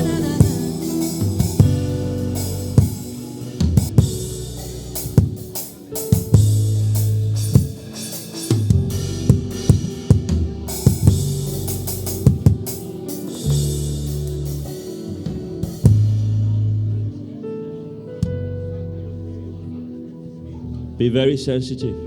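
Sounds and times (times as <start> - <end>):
drum kit playing: 0.0 - 16.8
held bass notes: 0.0 - 17.4
sustained chords: 0.0 - 17.4.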